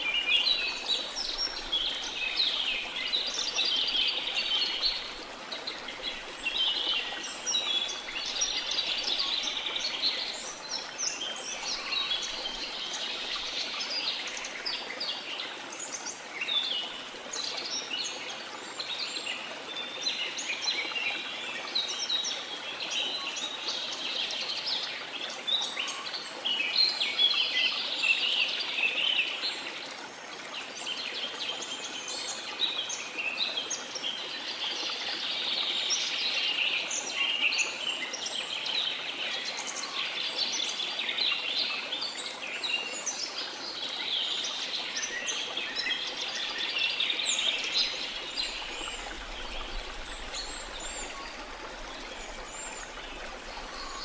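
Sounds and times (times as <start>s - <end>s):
waterfall rushing: 47.2s - 54.0s.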